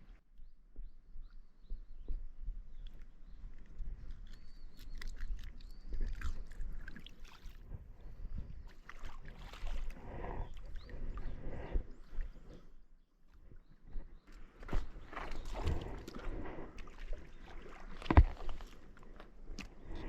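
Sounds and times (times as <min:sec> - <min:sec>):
water splashing: 0:08.7 - 0:10.8, 0:14.6 - 0:19.7.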